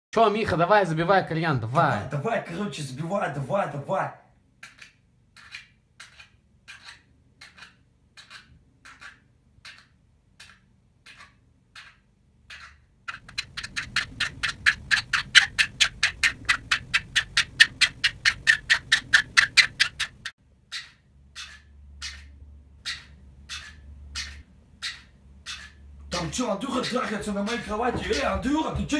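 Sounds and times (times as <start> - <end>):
bed springs squeaking: 13.1 - 20.3, 23.0 - 28.9.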